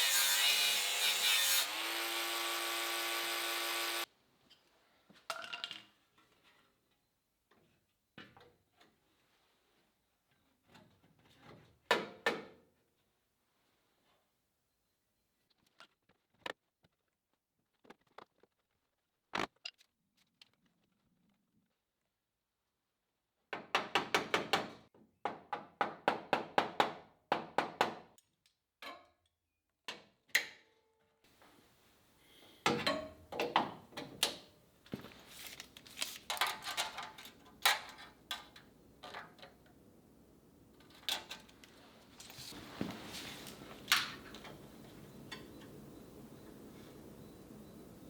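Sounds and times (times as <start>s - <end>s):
faint steady hiss: 31.3s - 32.6s, 34.5s - 48.0s.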